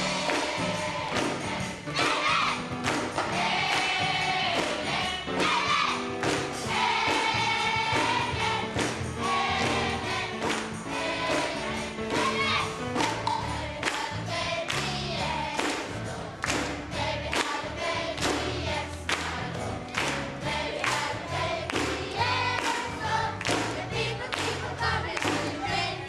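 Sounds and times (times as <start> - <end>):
choir singing over a beat: 0.0 - 26.0.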